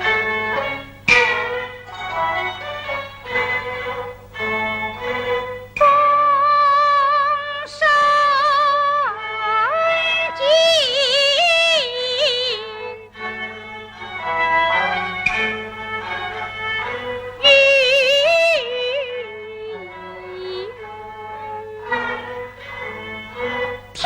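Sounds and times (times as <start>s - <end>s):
accompanying ensemble: 0.0s - 5.9s
opera singing with vibrato: 0.0s - 24.0s
percussive clack: 1.1s - 2.2s, 15.2s - 15.5s.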